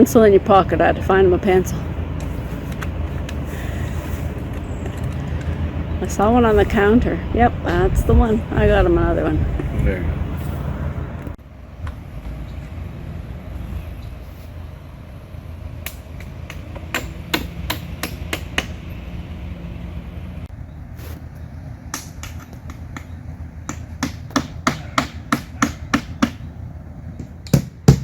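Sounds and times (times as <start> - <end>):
low background rumble: 0.0 - 28.0
hammer striking nails: 15.9 - 18.8, 21.9 - 26.4, 27.5 - 28.0.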